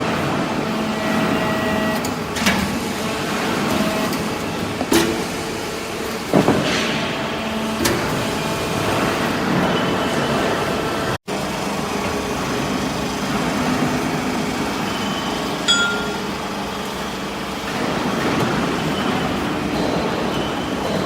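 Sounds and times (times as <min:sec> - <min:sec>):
hydraulic baler running: 0:00.0 - 0:21.0
sharp metallic knocks: 0:15.7 - 0:16.3.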